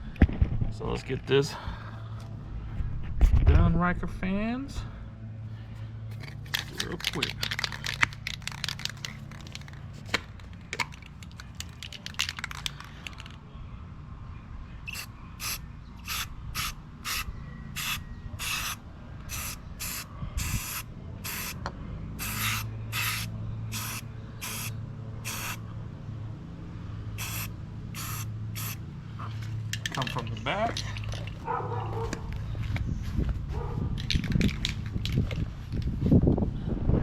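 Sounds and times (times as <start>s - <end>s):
short spray bursts: 14.9s - 21.6s, 22.2s - 25.6s, 27.2s - 28.8s.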